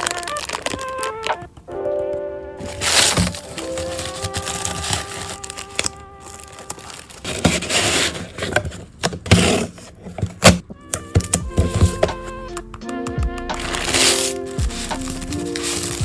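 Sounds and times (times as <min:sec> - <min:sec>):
paper and plastic wrapping rustling: 0:00.0 - 0:01.7, 0:02.6 - 0:12.4, 0:13.5 - 0:16.0
light background music: 0:00.0 - 0:07.1, 0:10.6 - 0:16.0
clicks and knocks of handling: 0:06.6 - 0:12.2.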